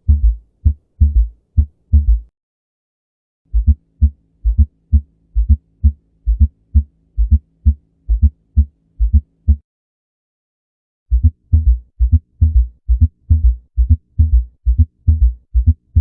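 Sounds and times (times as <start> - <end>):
heartbeat gallop rhythm: 0.0 - 2.3, 3.5 - 9.6, 11.1 - 16.0
faint steady hum: 3.5 - 9.6.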